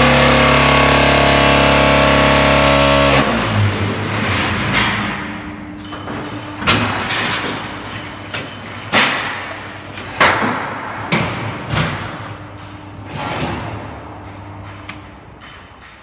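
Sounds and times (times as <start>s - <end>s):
machine motor hum: 0.0s - 8.3s
metal clanks and thuds: 3.8s - 16.0s.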